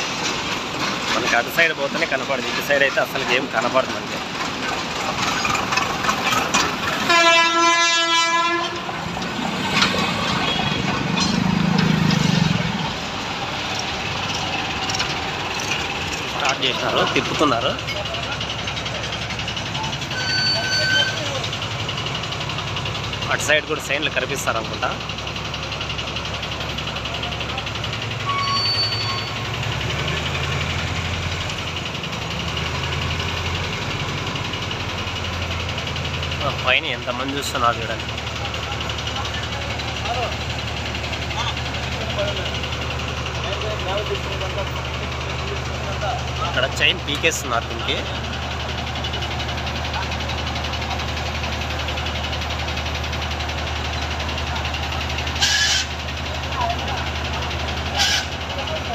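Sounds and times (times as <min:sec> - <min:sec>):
busy traffic: 0:00.0 - 0:58.9
construction site noise: 0:00.0 - 0:58.9
crane engine rumbling: 0:00.0 - 0:58.9
horn blast: 0:07.0 - 0:09.0
brief high tone: 0:20.1 - 0:21.3.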